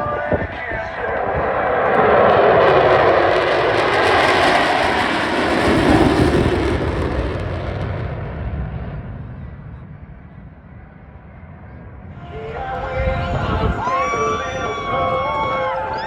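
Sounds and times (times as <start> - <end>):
jet aircraft roaring past: 0.0 - 16.0.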